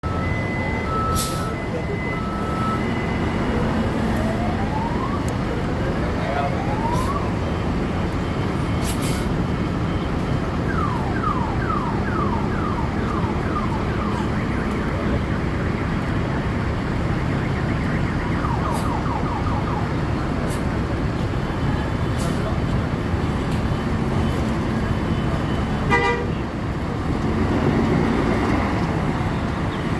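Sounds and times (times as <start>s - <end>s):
reverse alarm chirps: 0.0s - 3.6s
bus engine running: 19.9s - 29.9s.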